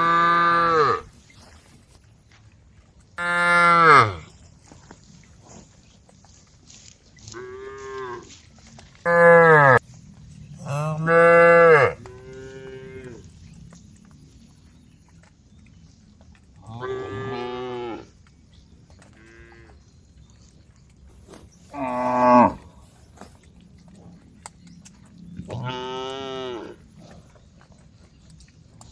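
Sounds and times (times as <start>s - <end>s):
cows mooing: 0.0s - 1.2s, 3.2s - 4.3s, 9.0s - 9.8s, 10.5s - 13.3s, 16.6s - 18.1s, 21.7s - 22.9s, 25.5s - 26.9s.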